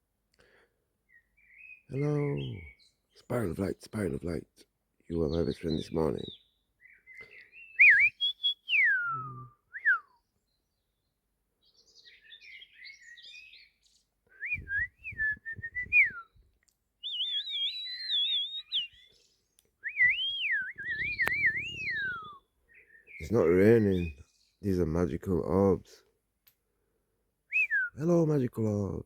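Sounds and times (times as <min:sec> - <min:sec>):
melodic whistling: 0:07.6 - 0:10.2, 0:14.3 - 0:16.4, 0:17.0 - 0:19.2, 0:19.8 - 0:22.4.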